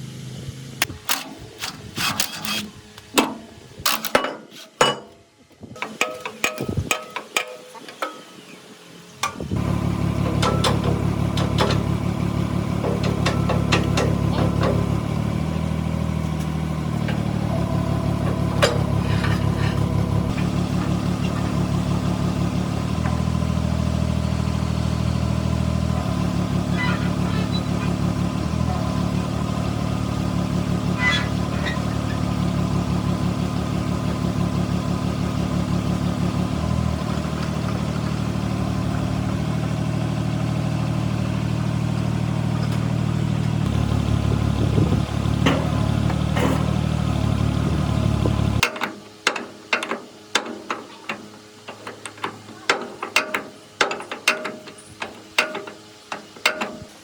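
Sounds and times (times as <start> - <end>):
motor pulsing hum: 9.4 - 48.6.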